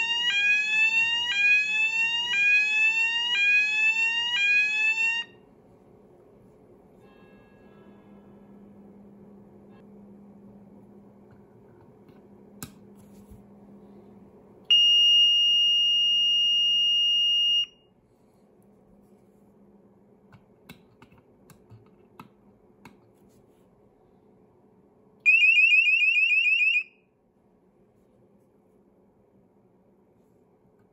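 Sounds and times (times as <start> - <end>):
high-pitched fire alarm tone: 0.0 - 5.4, 14.7 - 17.8, 25.3 - 27.0.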